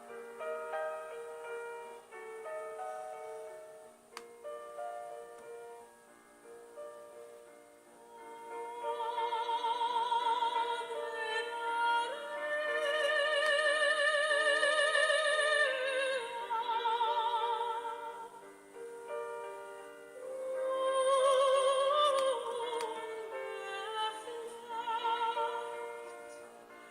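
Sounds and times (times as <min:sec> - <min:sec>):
soft steady accompaniment: 0:00.0 - 0:26.9.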